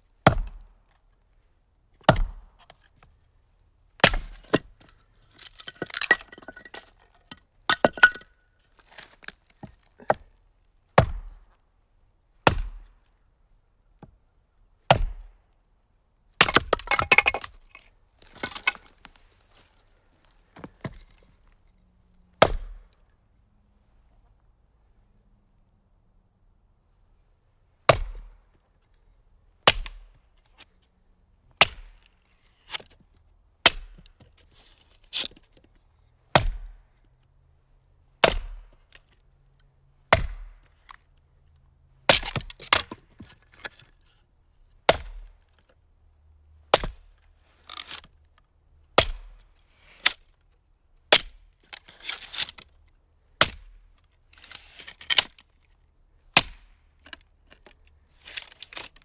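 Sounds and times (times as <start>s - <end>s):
axe chopping into wood: 0.2s - 0.7s, 2.1s - 2.6s, 4.0s - 4.8s, 11.0s - 11.4s, 12.4s - 12.9s, 14.9s - 15.3s, 16.4s - 17.5s, 22.4s - 22.9s, 27.9s - 28.4s, 29.7s - 30.0s, 31.6s - 32.0s, 33.6s - 34.1s, 36.3s - 36.8s, 38.2s - 38.8s, 40.1s - 40.6s, 42.1s - 43.3s, 44.9s - 45.3s, 46.7s - 47.0s, 49.0s - 49.4s, 51.1s - 51.4s, 53.4s - 53.8s, 56.4s - 56.8s
wood cracking and splintering: 5.4s - 7.0s, 16.4s - 19.2s.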